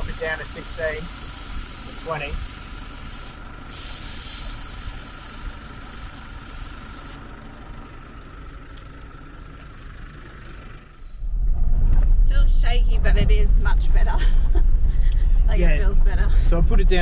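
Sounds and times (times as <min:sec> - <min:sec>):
air hissing from tyre valve: 0:00.0 - 0:07.2
low steady rumble: 0:00.0 - 0:17.0.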